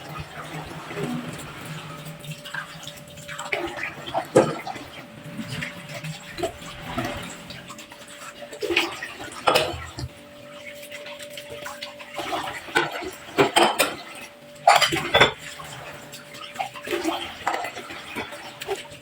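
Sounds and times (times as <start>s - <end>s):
dishes and cutlery clattering: 14.7s - 15.5s.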